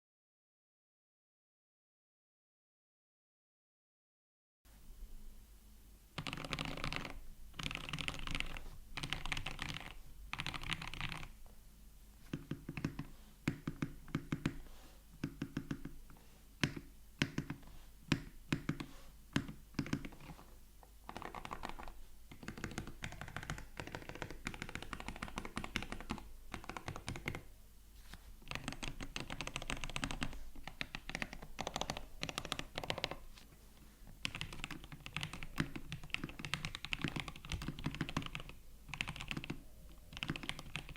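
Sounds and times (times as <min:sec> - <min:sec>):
mechanical keyboard typing: 0:06.2 - 0:11.3, 0:12.3 - 0:14.6, 0:16.6 - 0:20.4, 0:21.0 - 0:27.5, 0:28.5 - 0:33.2, 0:34.2 - 0:40.9.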